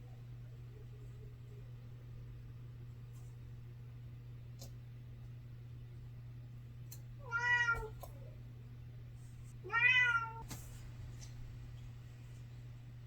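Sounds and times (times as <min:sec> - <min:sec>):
steady low hum: 0:00.0 - 0:13.0
faint clicks: 0:04.6 - 0:04.8, 0:06.8 - 0:07.1
cat meowing: 0:07.2 - 0:08.0, 0:09.6 - 0:10.4.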